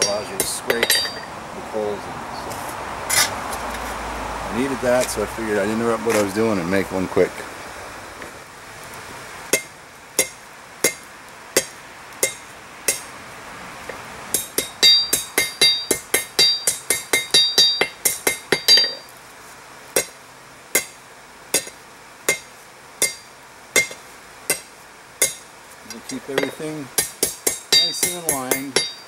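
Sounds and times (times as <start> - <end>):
hammer striking hot steel on anvil: 0.0 - 1.3, 9.5 - 13.1, 13.9 - 19.1, 20.0 - 29.0.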